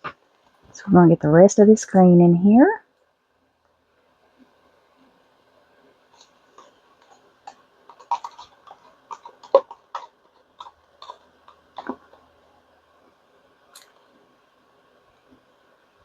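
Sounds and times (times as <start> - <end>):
stick scraping mixing cup: 6.2 - 12.4.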